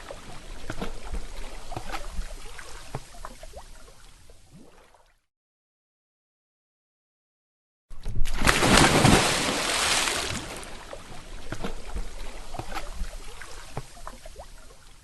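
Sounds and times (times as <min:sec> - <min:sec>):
water sloshing and dripping: 0:00.0 - 0:05.3, 0:08.0 - 0:15.0
splash into water: 0:08.0 - 0:14.6.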